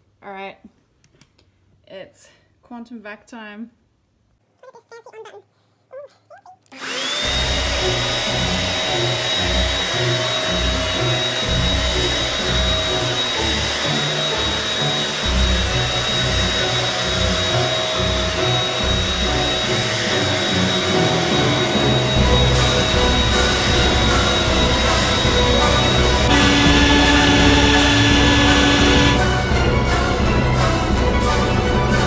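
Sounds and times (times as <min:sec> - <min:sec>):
vacuum cleaner motor whining: 0:06.7 - 0:29.2.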